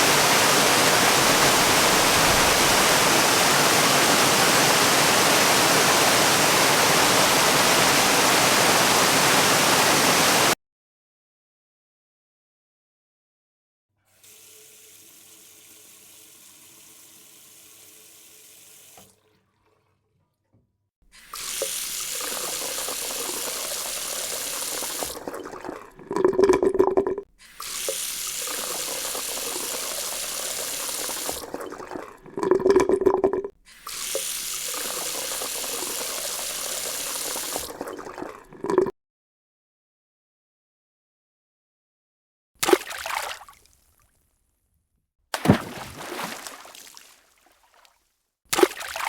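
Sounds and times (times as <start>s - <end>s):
water running from a tap: 14.2s - 19.1s, 21.2s - 38.9s
water splashing in a sink: 21.1s - 38.9s, 42.6s - 44.0s, 45.4s - 49.0s.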